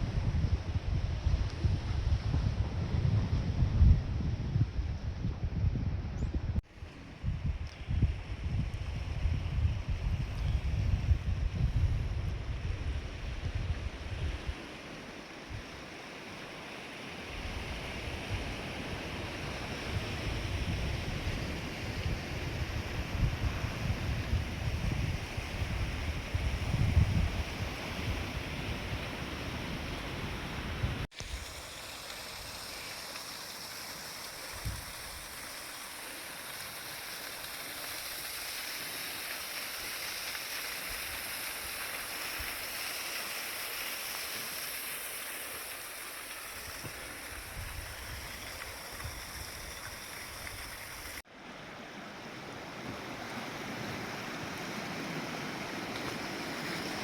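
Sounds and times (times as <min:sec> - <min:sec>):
wind on microphone: 0:00.0 - 0:15.8, 0:17.3 - 0:31.6, 0:34.5 - 0:35.4, 0:46.5 - 0:51.2
sea surf: 0:13.8 - 0:26.5, 0:27.3 - 0:49.2, 0:50.1 - 0:57.0.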